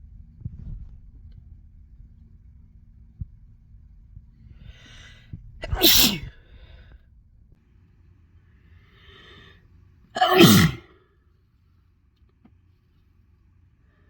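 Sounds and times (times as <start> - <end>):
person sneezing: 5.6 - 6.4, 10.2 - 11.0
breathy intake: 8.9 - 9.6, 10.2 - 10.9.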